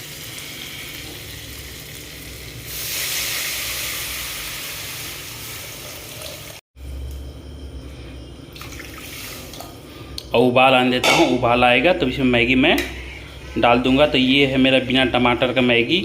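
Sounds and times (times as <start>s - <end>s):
water hissing in hot pan: 0.0s - 6.6s
onions frying in oil: 0.0s - 7.2s.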